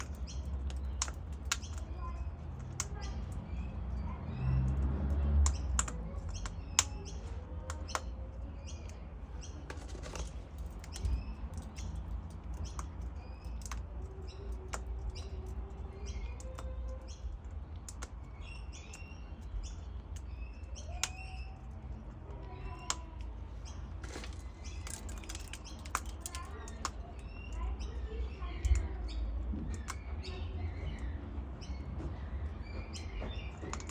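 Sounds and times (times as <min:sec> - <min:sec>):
cockatoo beak cracking and clicking: 0:00.0 - 0:03.5, 0:04.4 - 0:23.4, 0:24.0 - 0:27.9, 0:33.3 - 0:33.9
birds chirping: 0:00.0 - 0:33.9.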